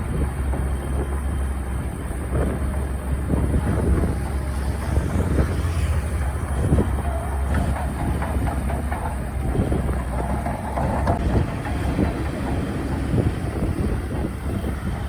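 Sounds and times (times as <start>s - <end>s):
heavy diesel engine running: 0.0s - 15.0s
metallic clanks from tracks: 0.0s - 15.0s.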